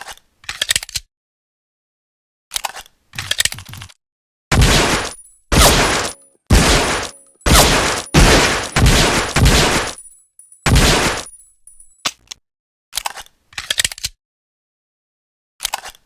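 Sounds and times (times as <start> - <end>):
pistol shots: 4.5 - 10.1, 10.7 - 11.3.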